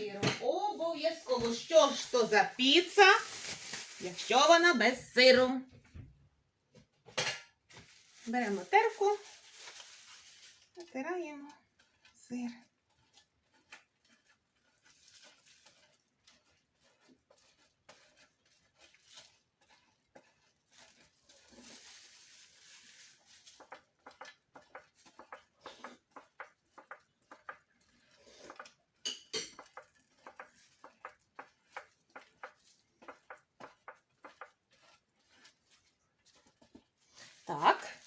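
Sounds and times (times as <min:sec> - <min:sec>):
cheese scraping on metal grater: 0:10.8 - 0:38.0.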